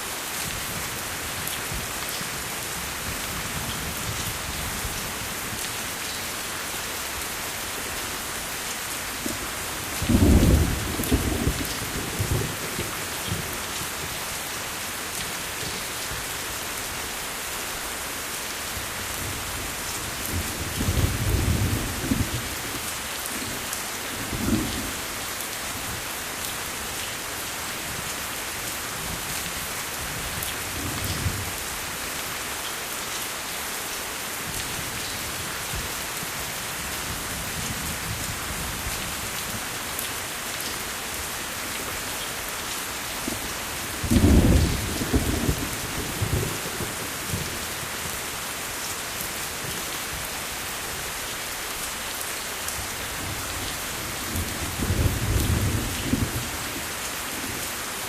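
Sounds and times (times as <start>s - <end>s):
steady rain falling: 0.0s - 58.0s
thunder rumbling: 44.0s - 46.6s.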